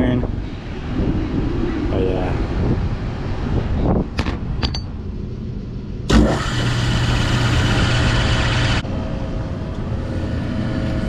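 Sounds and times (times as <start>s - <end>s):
steady low hum: 0.0s - 11.0s
blower rushing air: 6.0s - 11.0s.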